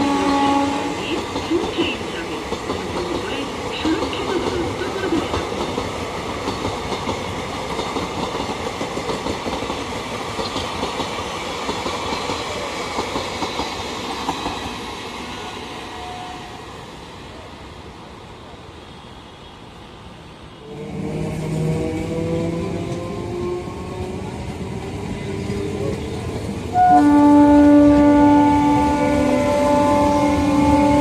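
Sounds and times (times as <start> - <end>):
train wheels clattering on rails: 0.0 - 15.0, 21.2 - 26.8.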